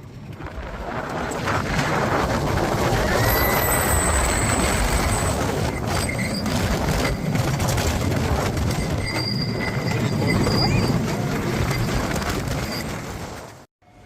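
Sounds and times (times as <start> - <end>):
roller coaster rumbling on track: 0.0 - 13.7
high wheel squeals: 3.0 - 7.4, 8.7 - 13.0.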